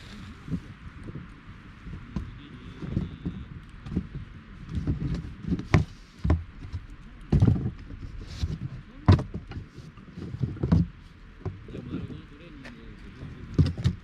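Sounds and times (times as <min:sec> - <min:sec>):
campfire crackling: 0:00.0 - 0:14.0
low rumble: 0:00.0 - 0:14.0.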